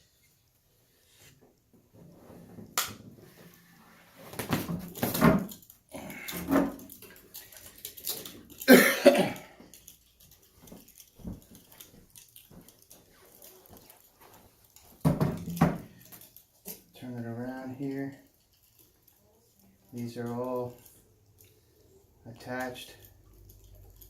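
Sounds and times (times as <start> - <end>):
plastic sheets rustling and scraping: 1.1 - 7.3.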